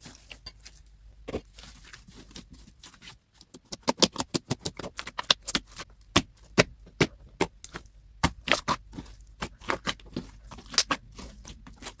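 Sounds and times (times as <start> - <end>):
slime squishing with wet clicks: 3.5 - 12.0.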